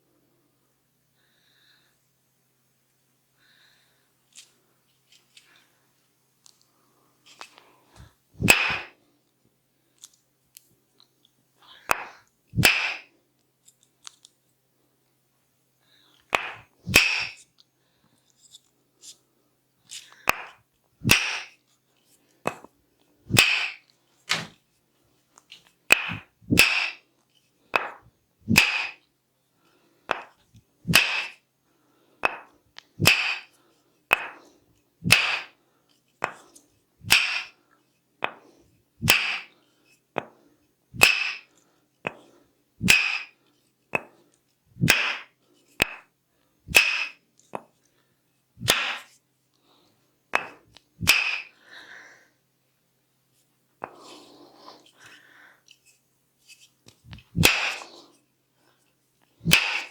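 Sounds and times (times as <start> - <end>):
percussive massage strikes: 8.4 - 8.9, 11.9 - 13.0, 16.4 - 17.4, 20.3 - 21.5, 23.3 - 24.6, 25.9 - 27.0, 27.8 - 29.0, 30.1 - 31.4, 32.2 - 33.5, 34.1 - 34.4, 35.0 - 35.5, 37.0 - 37.5, 39.0 - 39.5, 41.0 - 41.4, 42.8 - 43.3, 44.8 - 45.2, 46.7 - 47.1, 48.6 - 49.0, 50.4 - 51.5, 57.3 - 57.8, 59.4 - 59.9.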